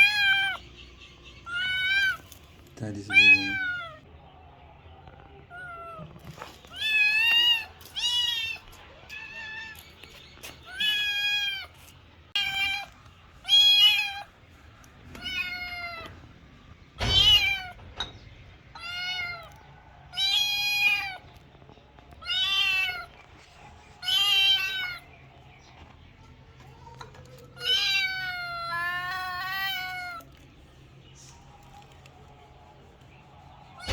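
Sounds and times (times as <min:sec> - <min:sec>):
kitten meowing: 0:00.0 - 0:00.6, 0:01.5 - 0:02.3, 0:03.1 - 0:04.0, 0:10.7 - 0:11.7, 0:12.4 - 0:14.3, 0:15.2 - 0:16.1, 0:24.0 - 0:25.0.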